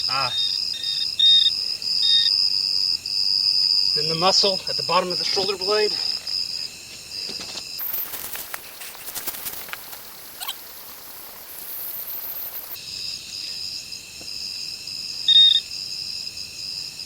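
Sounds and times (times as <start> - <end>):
crickets trilling: 0.0 - 17.0
hiss: 7.2 - 13.7.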